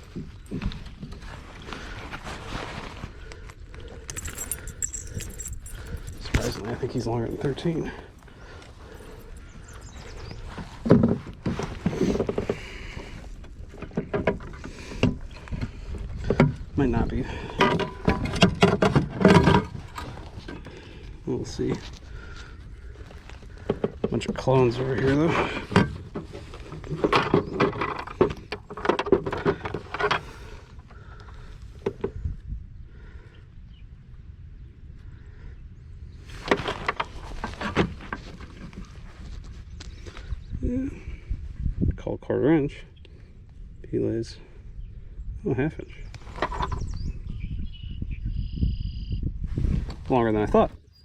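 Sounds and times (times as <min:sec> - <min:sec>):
knocks and scrapes on kayak hull: 0:10.4 - 0:16.6, 0:36.3 - 0:39.6.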